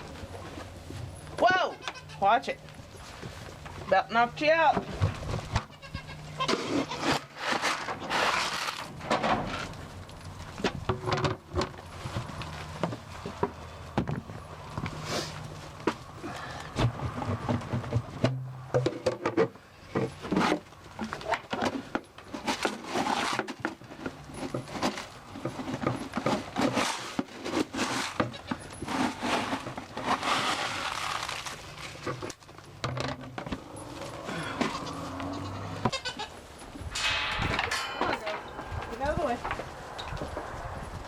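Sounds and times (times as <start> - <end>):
rustles and knocks: 6.4 - 34.8, 35.8 - 41.0.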